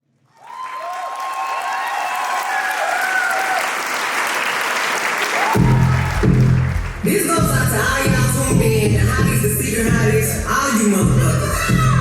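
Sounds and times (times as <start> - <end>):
audience applauding: 0.3 - 7.4.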